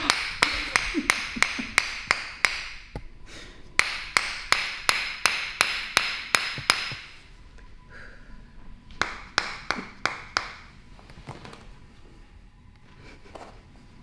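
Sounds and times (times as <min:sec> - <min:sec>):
adjusting tool tapping: 0:03.8 - 0:07.2.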